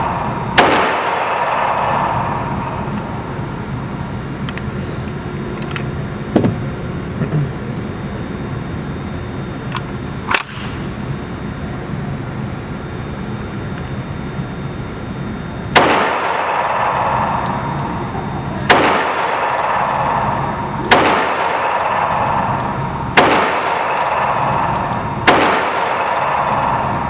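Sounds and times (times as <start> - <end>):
shooting range background noise: 0.0 - 27.0
sharp gunshot cracks: 0.6 - 1.9, 18.7 - 19.6, 20.9 - 22.2, 23.2 - 24.2, 25.3 - 26.2.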